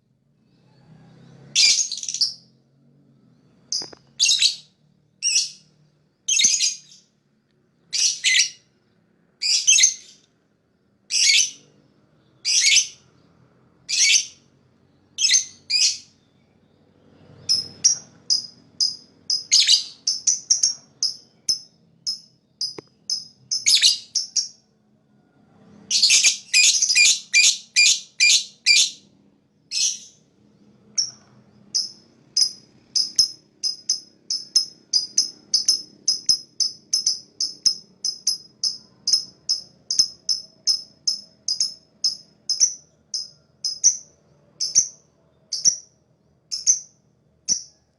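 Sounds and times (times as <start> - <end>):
lovebird chirping harshly: 3.8 - 5.6, 17.4 - 21.7, 22.6 - 24.5, 25.9 - 29.0.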